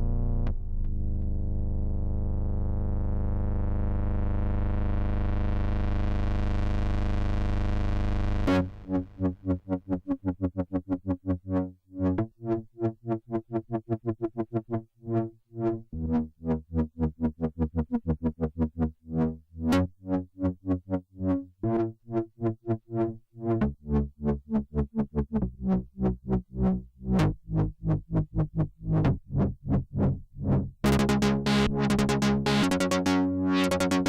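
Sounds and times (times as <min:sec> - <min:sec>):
synthesizer bass line: 0:00.0 - 0:34.0
synthesizer plucked notes: 0:08.3 - 0:34.0.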